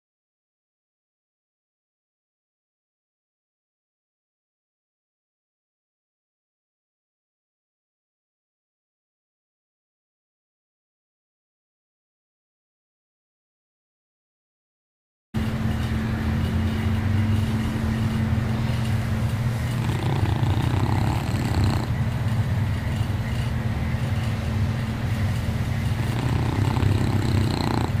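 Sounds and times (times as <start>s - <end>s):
dog snoring: 19.6s - 22.4s, 25.8s - 28.0s.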